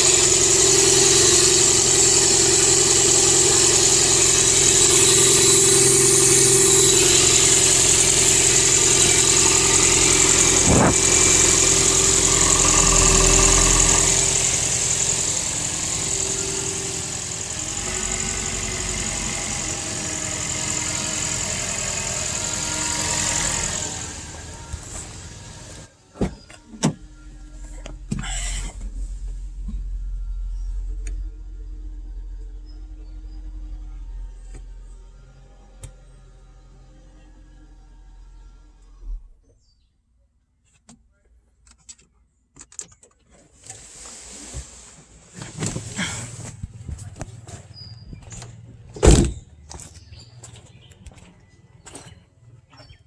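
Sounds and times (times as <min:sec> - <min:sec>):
car engine running: 0:00.0 - 0:39.4.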